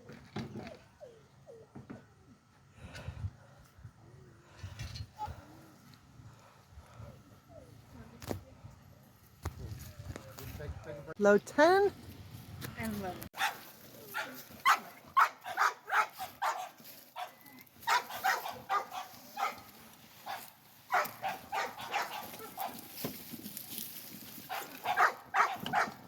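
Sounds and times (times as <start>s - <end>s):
dog barking: 13.4s - 22.8s, 24.5s - 26.0s.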